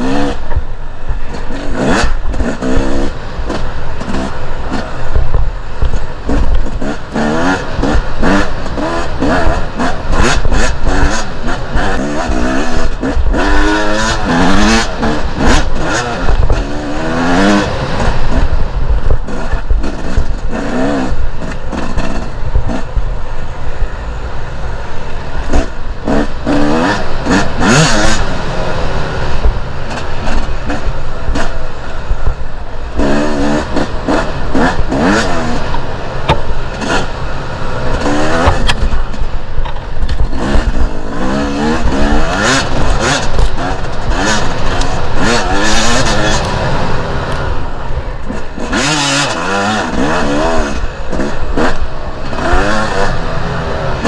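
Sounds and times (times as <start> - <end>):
dirt bike engine revving: 0.0 - 54.0.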